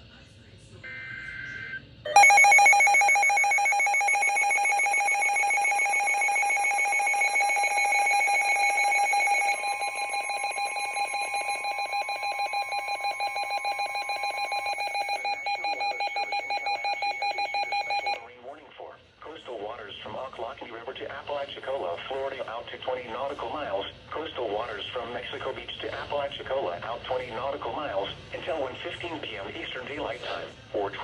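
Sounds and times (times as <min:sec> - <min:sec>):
faint steady tone: 0:00.9 - 0:18.4
buzzy pulsing alarm tone: 0:02.1 - 0:18.2.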